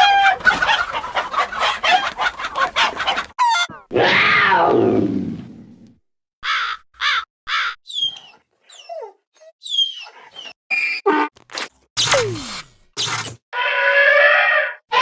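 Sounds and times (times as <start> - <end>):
cartoon falling tone: 3.4 - 4.2
crow cawing: 6.4 - 7.8
chirping bird calls: 7.0 - 8.9.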